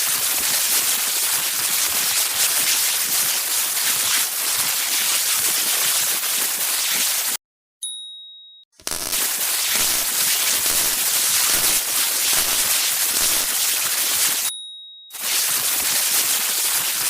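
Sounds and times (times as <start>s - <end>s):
electricity sparking crackle: 1.5s - 7.4s, 8.8s - 14.5s, 15.2s - 17.0s.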